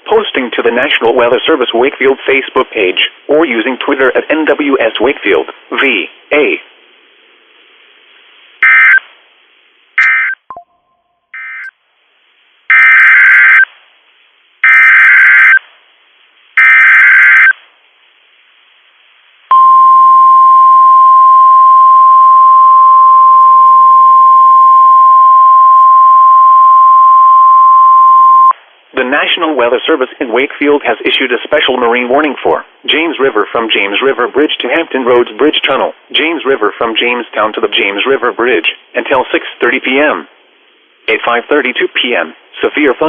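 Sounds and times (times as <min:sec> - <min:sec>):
buzzing alert data bursts: 0:10.0 - 0:10.4, 0:11.4 - 0:11.7.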